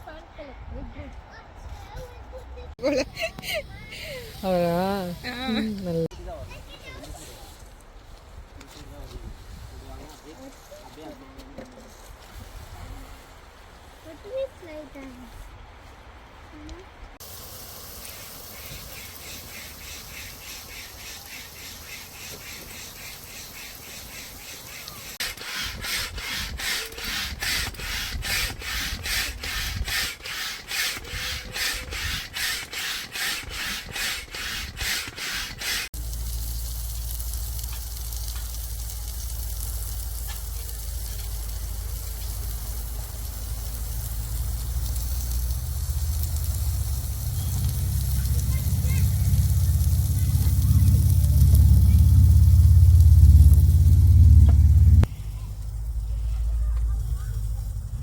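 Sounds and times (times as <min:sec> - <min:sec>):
rubbing or scraping strokes: 0:18.0 - 0:36.0
low rumble: 0:40.9 - 0:58.0.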